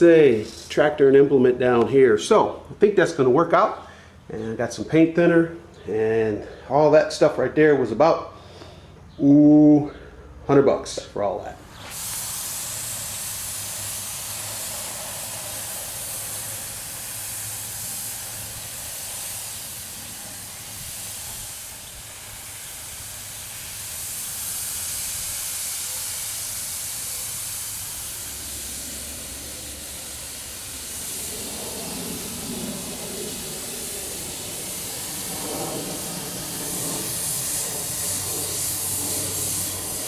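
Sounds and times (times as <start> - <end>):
paint spray gun hissing: 11.6 - 40.0.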